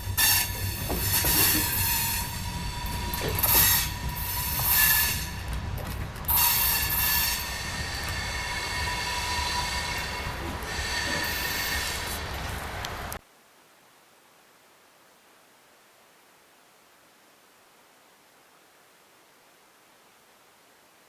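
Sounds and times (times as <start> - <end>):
train wheels squealing on rail: 0.0 - 12.9
railcars rumbling past: 0.0 - 13.2.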